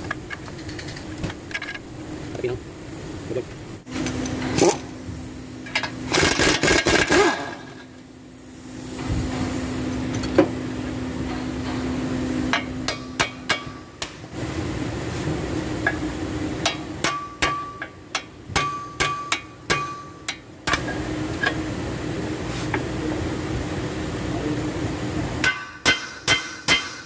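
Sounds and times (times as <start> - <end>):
steady hum: 0.0 - 27.0
hammer striking steel: 12.5 - 14.2, 16.6 - 21.6, 25.4 - 27.0.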